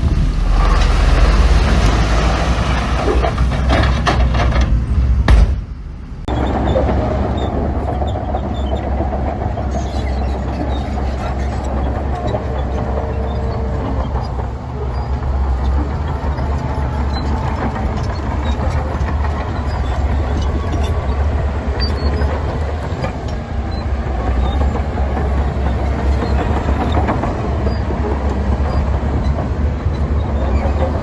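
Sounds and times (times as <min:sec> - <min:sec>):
diesel machinery engine drone: 0:00.0 - 0:31.0
small metallic clanks and rattles: 0:02.8 - 0:05.6.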